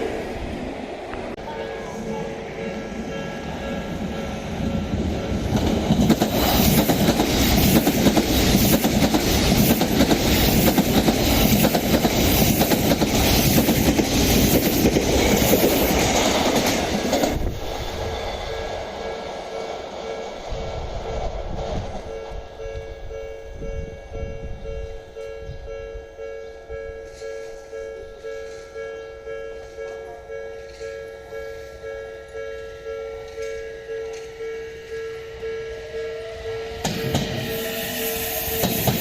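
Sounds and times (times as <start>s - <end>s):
electric train rushing past: 0.0s - 26.3s, 30.6s - 39.0s
level crossing warning bell: 1.4s - 6.0s, 18.5s - 20.6s, 22.0s - 37.5s.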